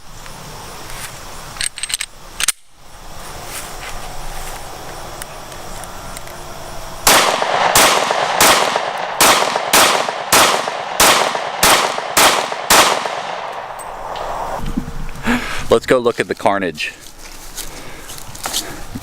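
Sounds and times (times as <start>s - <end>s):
pistol shots: 7.0s - 14.3s.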